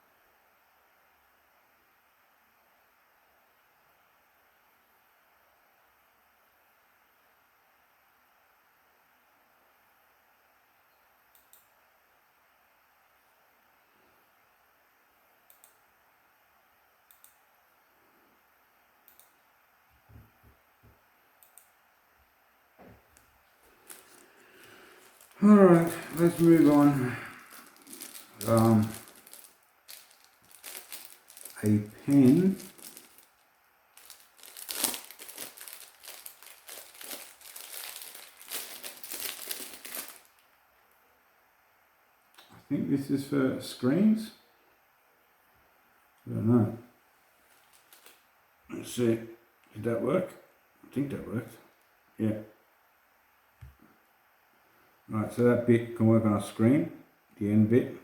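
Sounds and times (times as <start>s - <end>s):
plastic packaging crinkling: 23.6s - 40.4s, 47.5s - 48.2s.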